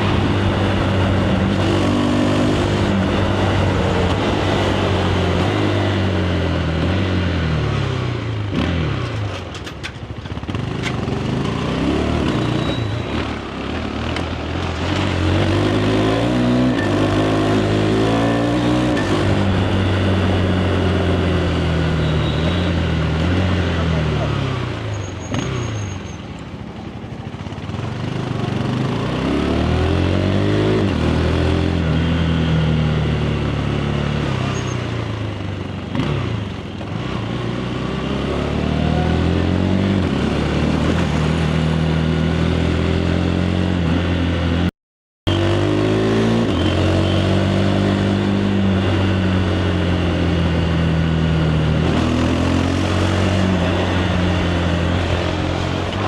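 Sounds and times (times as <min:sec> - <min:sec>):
motorcycle engine accelerating: 0:00.0 - 0:44.7, 0:45.3 - 0:56.0.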